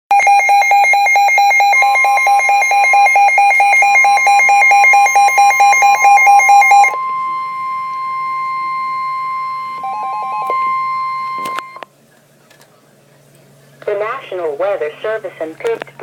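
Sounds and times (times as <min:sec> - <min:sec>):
electronic alarm warbling: 0:00.1 - 0:11.8
steady high alert tone: 0:00.1 - 0:11.8.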